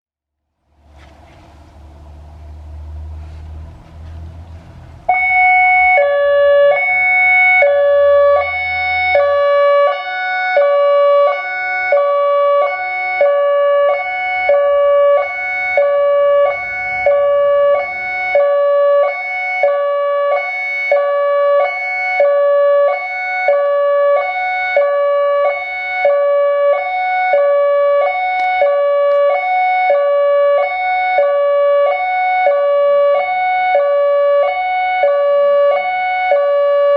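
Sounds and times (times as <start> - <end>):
hi-lo warning siren: 1.8 - 36.9
low rumble: 13.4 - 20.3.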